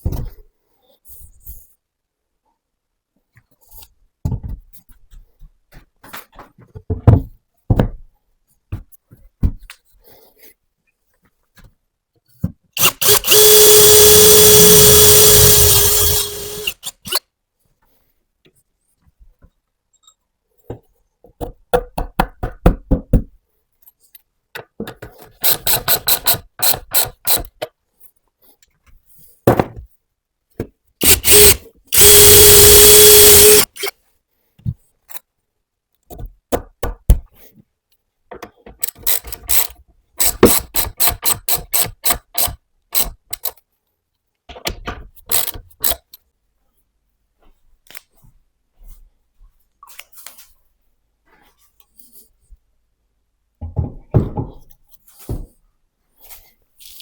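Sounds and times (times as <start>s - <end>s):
power drill running: 12.8s - 17.2s, 31.0s - 33.9s
clicks and knocks of handling tools: 38.3s - 43.7s.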